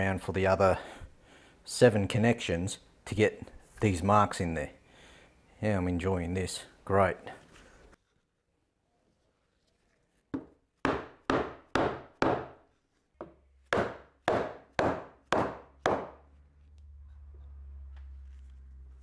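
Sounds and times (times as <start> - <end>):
hammer striking wooden board: 10.4 - 12.6, 13.2 - 16.2.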